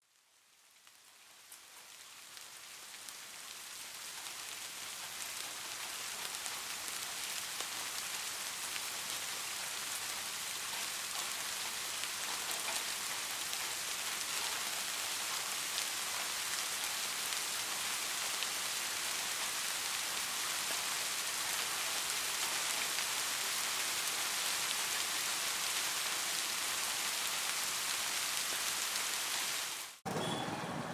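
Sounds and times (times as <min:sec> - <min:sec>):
steady rain hiss: 0:00.0 - 0:30.0.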